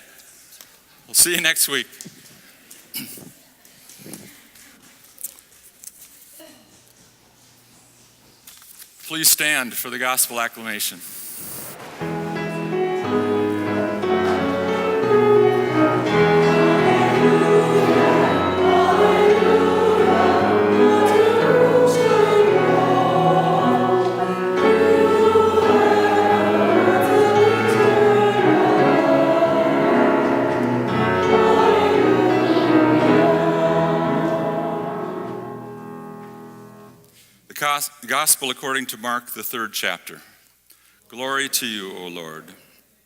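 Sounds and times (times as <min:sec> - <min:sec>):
choir singing sustained chords: 0:11.7 - 0:37.0.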